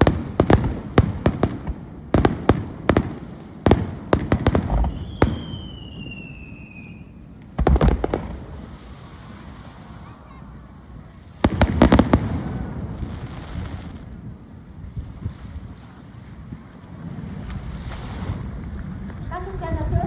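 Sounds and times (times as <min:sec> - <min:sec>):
fireworks bursting: 0:00.0 - 0:15.4
firework rumble: 0:00.0 - 0:20.0
descending whistling tone: 0:04.9 - 0:07.1.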